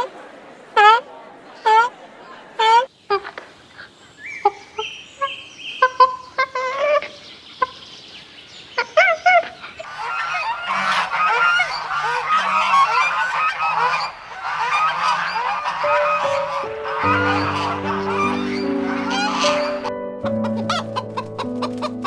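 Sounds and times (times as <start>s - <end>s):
flock of fowl calling: 2.6s - 7.9s, 8.7s - 19.9s.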